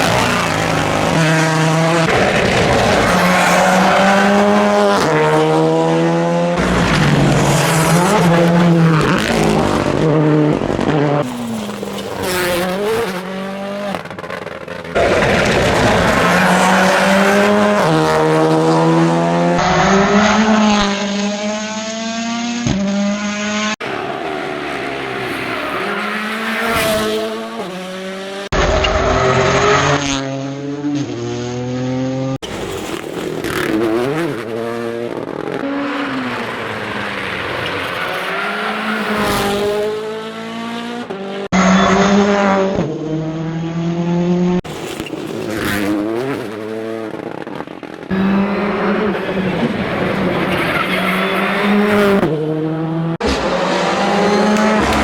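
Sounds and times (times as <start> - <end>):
rally car engines revving: 0.0 - 55.0
tyre squeal: 48.1 - 52.2.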